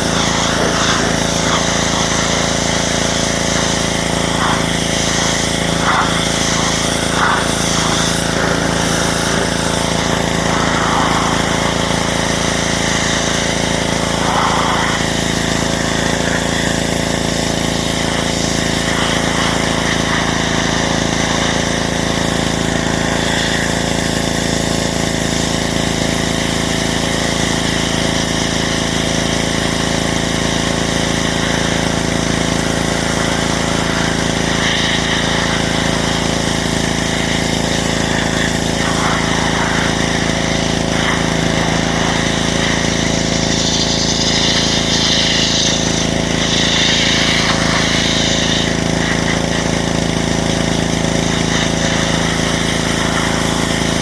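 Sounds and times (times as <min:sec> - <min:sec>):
water spray hissing: 0:00.0 - 0:24.3, 0:31.0 - 0:54.0
small engine humming: 0:00.0 - 0:54.0.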